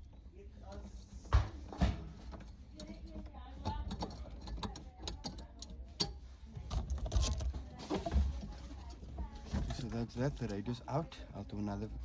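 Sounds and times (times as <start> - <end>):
plastic and metal parts rattling: 1.8 - 10.7.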